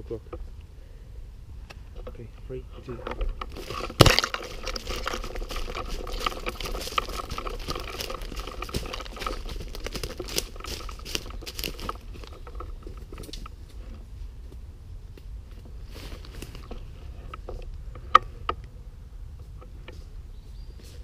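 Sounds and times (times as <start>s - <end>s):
footsteps rustling and crunching: 2.8s - 17.6s.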